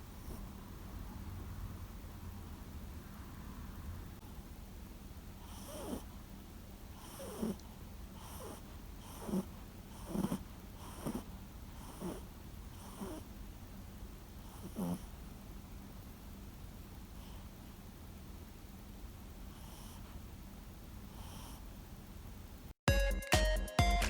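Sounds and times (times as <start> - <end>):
dog snoring: 0.0 - 0.8, 5.4 - 6.2, 6.9 - 13.3, 14.4 - 15.2, 19.5 - 20.2, 21.1 - 21.7.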